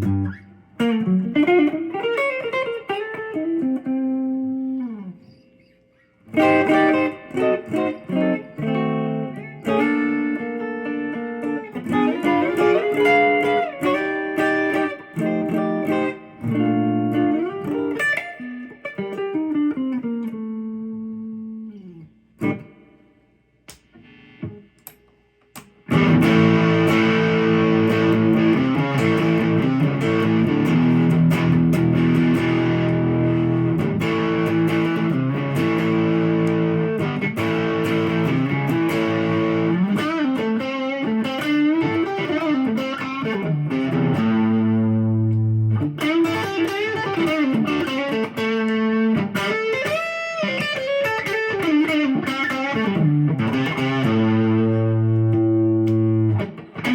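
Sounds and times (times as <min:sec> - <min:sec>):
electric guitar playing: 0:00.0 - 0:56.9.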